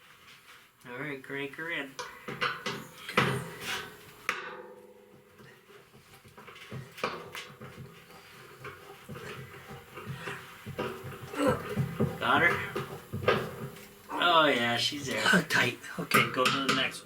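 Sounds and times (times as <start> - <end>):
metal tools knocking and clanking: 2.0 - 5.5, 6.4 - 13.8, 15.2 - 17.0.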